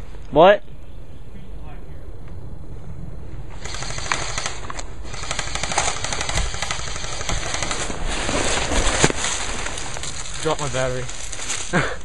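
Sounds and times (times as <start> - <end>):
airsoft guns firing automatic bursts: 3.6 - 11.0.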